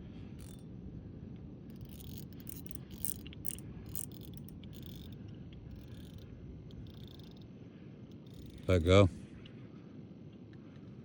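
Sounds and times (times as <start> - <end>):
low steady rumble: 0.0 - 11.0
fishing reel drag buzzing: 1.7 - 7.4.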